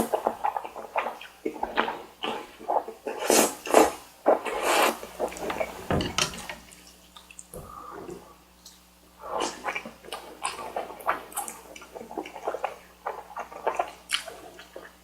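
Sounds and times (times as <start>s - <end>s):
slurping and chewing noodles: 0.0s - 5.8s, 6.8s - 15.0s
dull knock: 5.8s - 6.5s.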